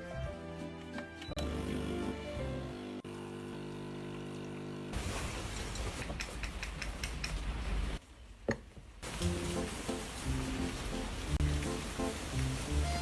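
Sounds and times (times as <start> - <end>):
held musical tones: 11.3 - 13.0.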